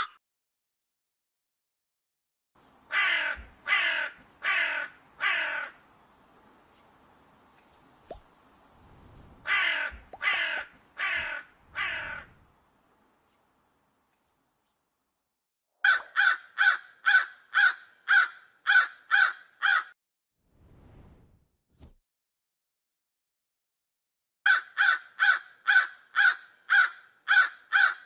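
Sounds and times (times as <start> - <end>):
crow cawing: 2.9 - 5.8, 9.4 - 12.4, 15.8 - 20.0, 24.5 - 28.0.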